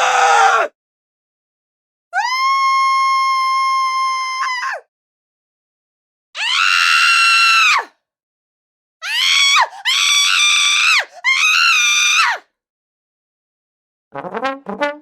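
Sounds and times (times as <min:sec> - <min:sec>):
person screaming: 0:00.0 - 0:00.7.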